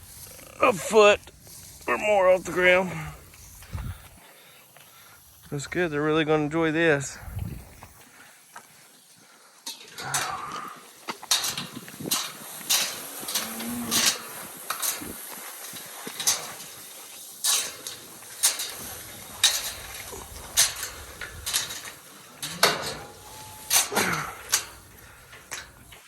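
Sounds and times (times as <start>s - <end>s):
cattle tearing grass: 11.6s - 26.0s.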